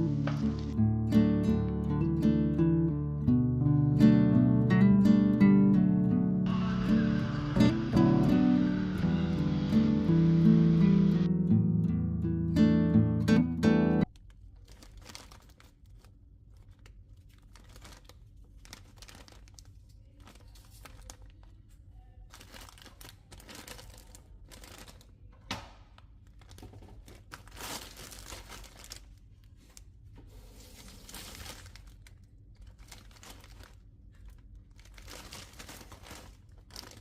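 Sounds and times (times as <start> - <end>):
rustling and crinkling: 14.1 - 37.0.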